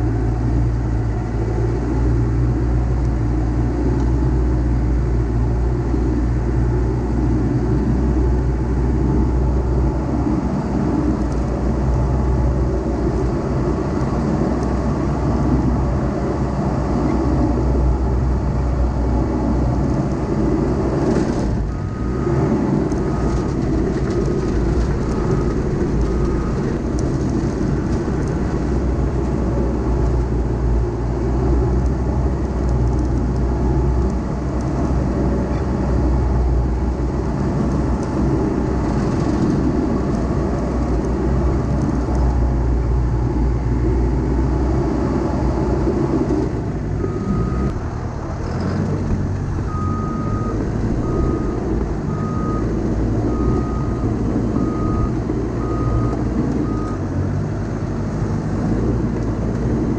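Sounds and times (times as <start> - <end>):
heavy diesel machinery running: 0.0 - 59.9
back-up alarm beeping: 49.7 - 57.1.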